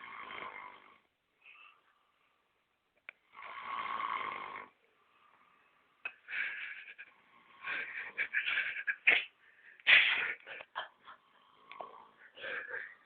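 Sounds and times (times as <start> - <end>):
man snoring loudly: 0.0 - 1.1, 3.2 - 4.8.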